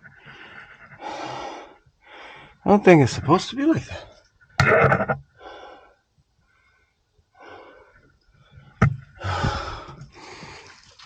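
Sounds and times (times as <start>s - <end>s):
man breathing hard: 0.1s - 2.6s, 5.3s - 10.9s.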